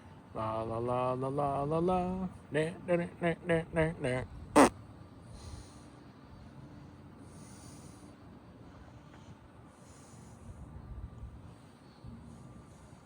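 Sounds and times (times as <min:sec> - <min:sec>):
soft breaths: 0:05.2 - 0:13.0.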